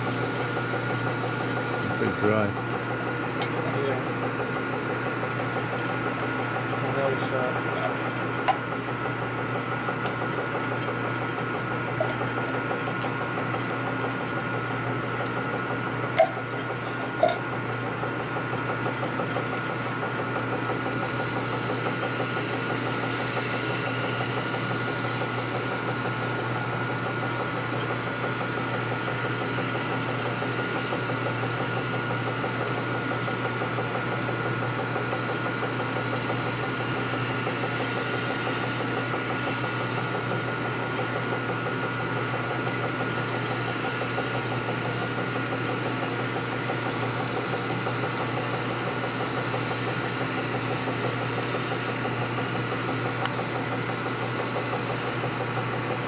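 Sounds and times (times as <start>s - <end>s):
machine tool running: 0.0s - 19.5s.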